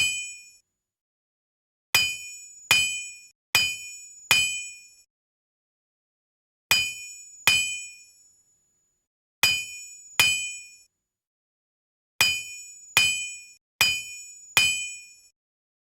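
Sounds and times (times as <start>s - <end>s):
hammer striking iron on anvil: 12.2s - 15.0s.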